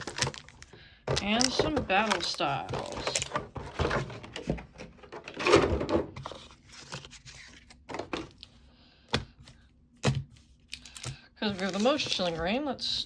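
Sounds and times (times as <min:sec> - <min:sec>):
packs rustling and crinkling: 0:00.0 - 0:05.6, 0:10.7 - 0:12.5.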